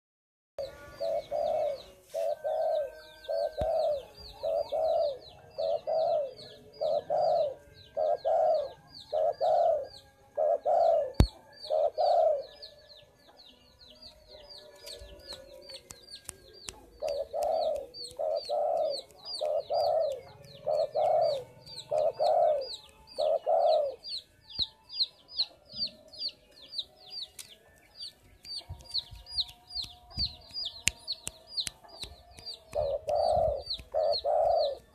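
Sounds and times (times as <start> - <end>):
dove cooing: 0.6 - 12.6, 16.8 - 24.0, 32.8 - 34.9
small bird chirping: 14.0 - 34.9.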